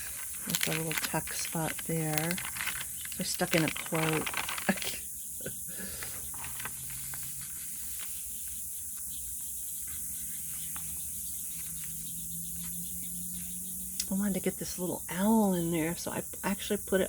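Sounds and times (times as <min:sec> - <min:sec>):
paper pages rustling: 0:00.0 - 0:05.0, 0:06.2 - 0:08.6.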